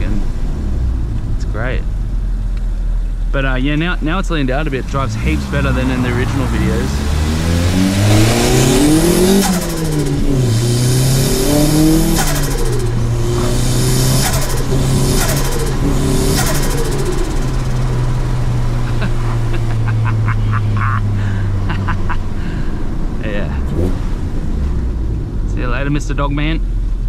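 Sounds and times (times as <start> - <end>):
car engine revving: 0.0 - 27.0
fluttery turbo surge: 5.9 - 18.4.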